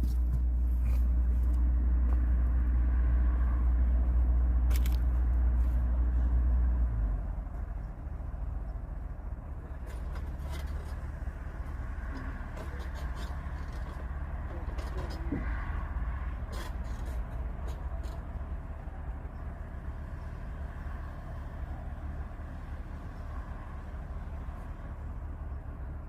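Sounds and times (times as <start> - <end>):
car engine idling: 0.0 - 26.0.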